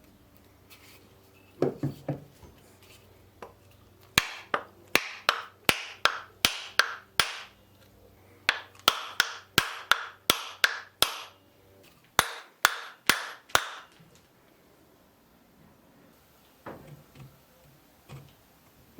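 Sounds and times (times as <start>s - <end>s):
hammer striking wood: 4.2s - 7.5s, 8.5s - 11.3s, 12.2s - 13.9s.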